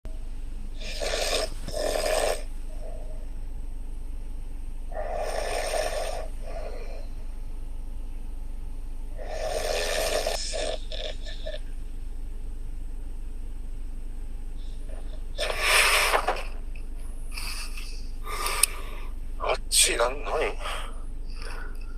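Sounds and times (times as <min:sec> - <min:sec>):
steady low hum: 0:00.0 - 0:21.9
person snoring heavily: 0:00.8 - 0:03.2, 0:04.9 - 0:07.2, 0:09.2 - 0:11.6, 0:14.9 - 0:16.6, 0:17.4 - 0:19.1.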